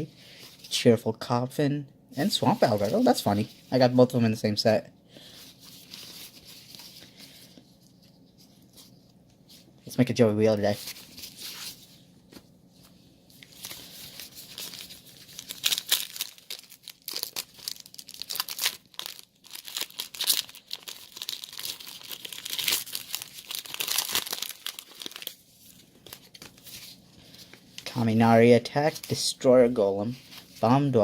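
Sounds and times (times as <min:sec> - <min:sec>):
foil wrapper tearing and crinkling: 0:13.4 - 0:27.9.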